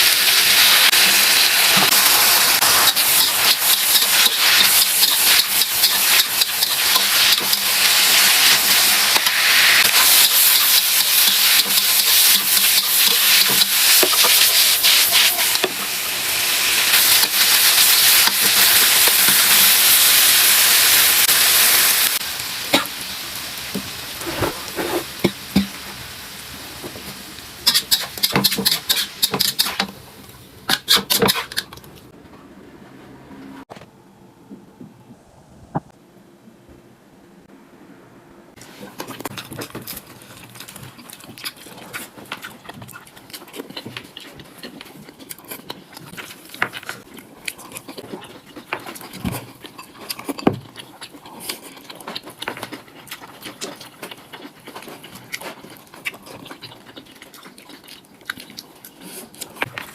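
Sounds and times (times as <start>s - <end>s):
food sizzling in a pan: 0.0s - 30.0s
spatula scraping a pan: 27.6s - 29.9s.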